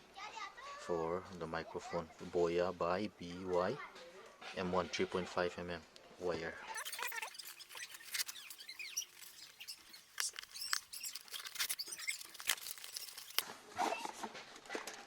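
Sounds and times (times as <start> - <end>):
packaging crinkling and clicking: 6.8 - 13.4.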